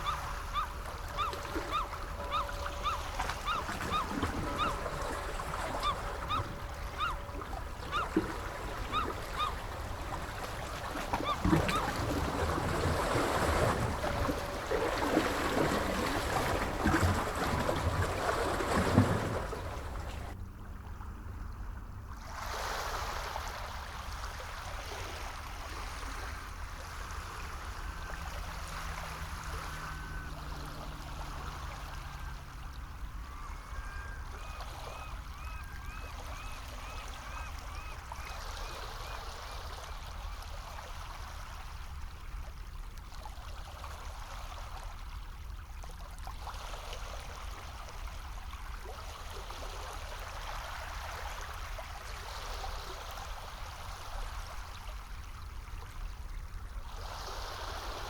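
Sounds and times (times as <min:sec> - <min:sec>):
birds calling: 0:00.0 - 0:20.2
sea water washing: 0:00.0 - 0:20.4.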